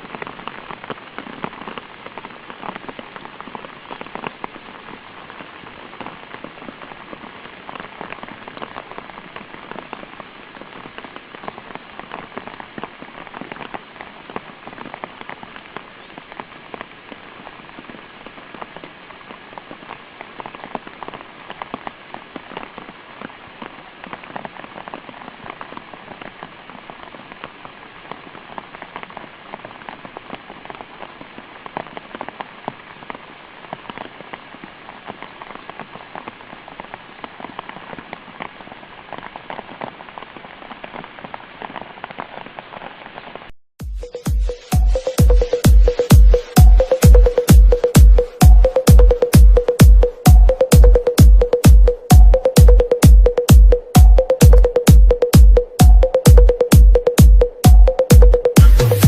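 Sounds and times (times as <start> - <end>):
steady rain hiss: 0.0 - 43.5.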